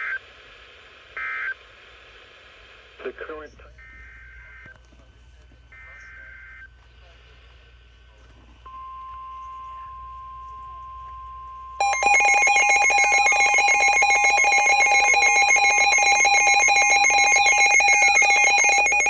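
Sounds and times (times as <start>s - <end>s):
pulsing electronic alarm: 11.8s - 19.0s
steady alarm tone: 11.8s - 19.0s.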